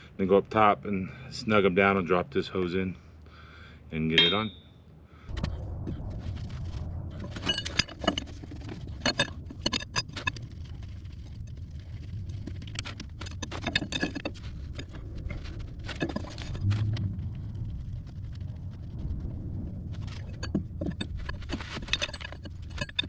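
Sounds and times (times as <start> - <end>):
steady low hum: 3.7 - 23.0
metal tools clinking: 4.2 - 4.7, 12.9 - 14.9, 20.4 - 23.0.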